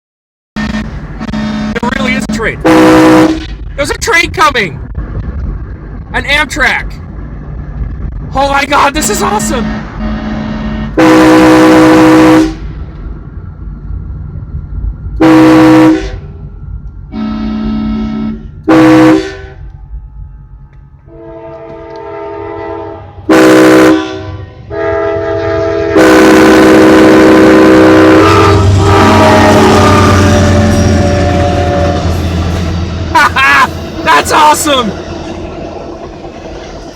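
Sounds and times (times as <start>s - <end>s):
loud close train horn: 0.6s - 3.6s, 9.6s - 12.7s, 15.2s - 16.4s, 17.1s - 19.7s, 21.1s - 33.1s
distant train horn: 0.6s - 3.7s, 9.6s - 12.8s, 15.2s - 35.5s.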